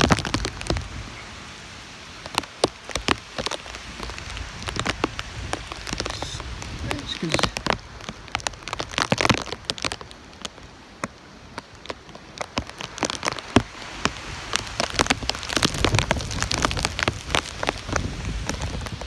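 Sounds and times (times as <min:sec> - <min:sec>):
heavy rain falling: 0:00.0 - 0:19.0
sharp raindrop taps: 0:02.2 - 0:19.0
wind buffeting microphone: 0:03.7 - 0:09.0, 0:13.8 - 0:19.0.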